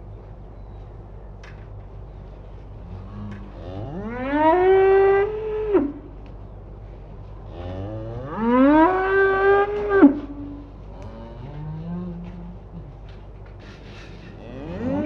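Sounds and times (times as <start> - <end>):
cattle mooing: 2.8 - 6.1, 7.5 - 13.0, 14.2 - 15.0.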